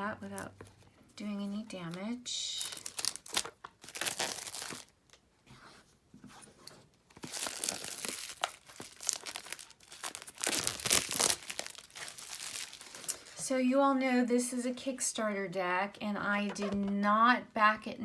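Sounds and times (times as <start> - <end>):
plastic shrink wrap crinkling: 0.2 - 5.2, 7.1 - 13.5.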